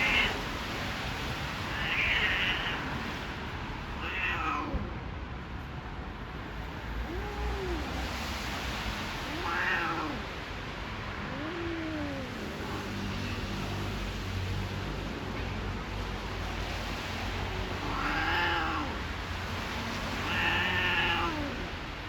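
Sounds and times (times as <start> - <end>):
cats yowling: 0.0 - 0.8, 1.6 - 3.4, 4.0 - 4.9, 7.0 - 8.3, 9.2 - 13.1, 16.6 - 22.0.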